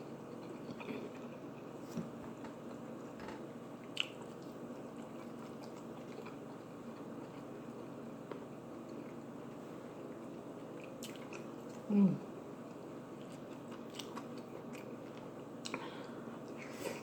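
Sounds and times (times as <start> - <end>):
person chewing soft food: 0.0 - 3.1, 3.8 - 12.0, 12.6 - 17.0.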